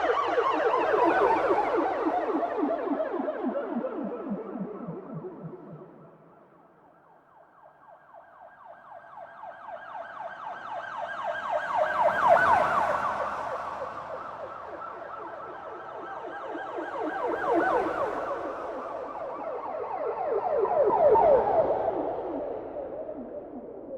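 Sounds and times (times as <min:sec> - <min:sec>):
police siren yelp: 0:07.4 - 0:23.9.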